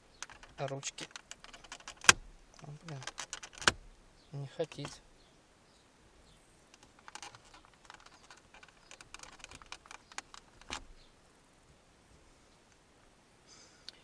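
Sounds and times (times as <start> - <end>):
plastic knobs clicking and scraping: 0.2 - 3.9, 4.7 - 5.0, 6.7 - 10.9.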